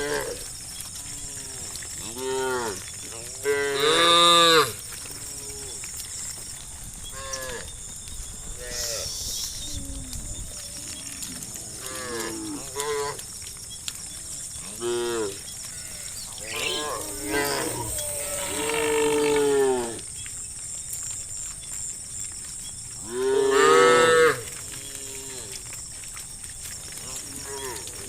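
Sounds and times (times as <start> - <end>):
cows mooing: 14.6 - 20.0, 23.2 - 25.6, 27.1 - 28.0.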